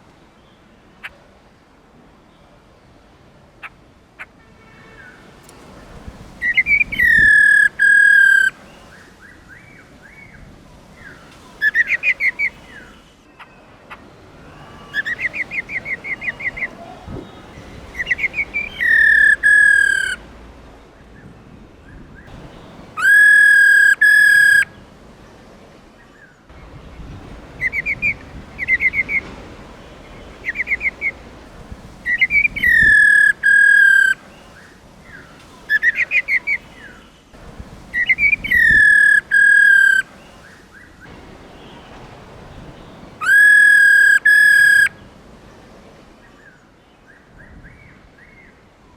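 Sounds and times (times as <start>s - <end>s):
laughingthrush calling: 6.4s - 8.6s, 11.6s - 12.9s, 14.4s - 20.2s, 22.3s - 24.7s, 27.5s - 34.3s, 35.6s - 36.9s, 37.9s - 40.5s, 43.2s - 44.9s.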